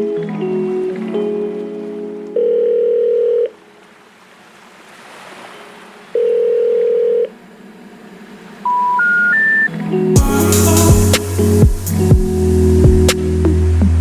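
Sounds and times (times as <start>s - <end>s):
soft noise wash: 3.5s - 14.0s
electronic beeps: 8.6s - 9.7s.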